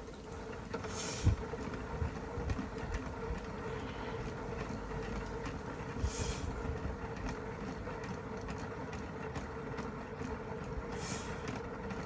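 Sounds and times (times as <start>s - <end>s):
steady mechanical hum: 0.0s - 12.0s.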